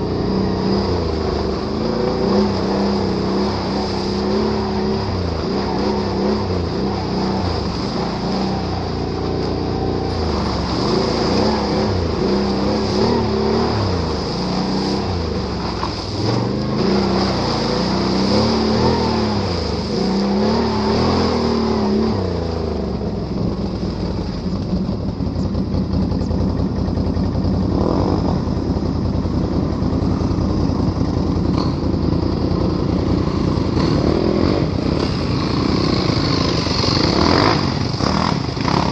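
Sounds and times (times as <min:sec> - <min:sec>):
atv engine revving: 0:00.0 - 0:38.9.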